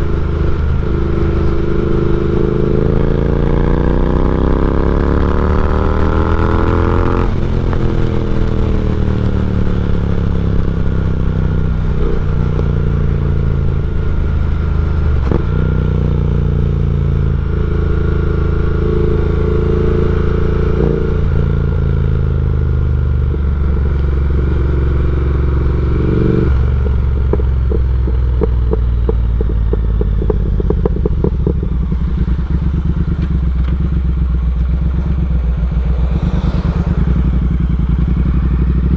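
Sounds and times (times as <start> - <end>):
motorcycle engine revving through gears: 0.0 - 38.9
exhaust crackles and pops: 5.7 - 10.9, 23.0 - 38.9.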